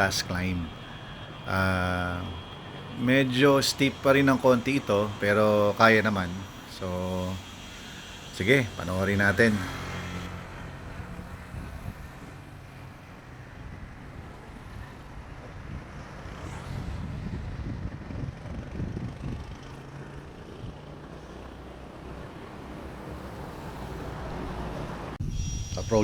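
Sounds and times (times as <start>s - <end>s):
wind buffeting microphone: 10.8s - 12.5s, 13.4s - 21.1s, 24.2s - 26.0s.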